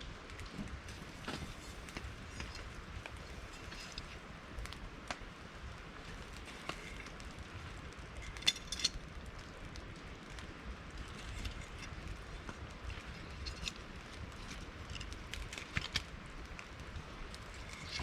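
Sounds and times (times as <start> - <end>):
campfire crackling: 0.0 - 18.0.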